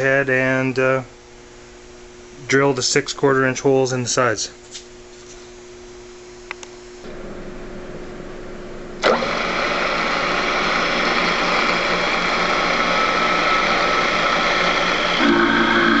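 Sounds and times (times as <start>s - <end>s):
drill press running: 9.0s - 16.0s.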